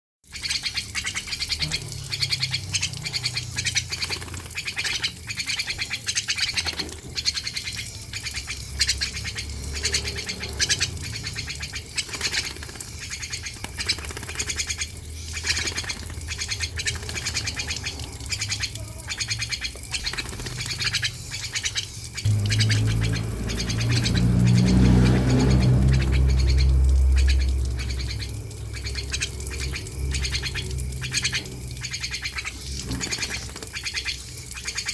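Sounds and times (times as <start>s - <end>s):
starling chattering and squawking: 0.3s - 34.9s
low steady hum: 14.4s - 34.9s.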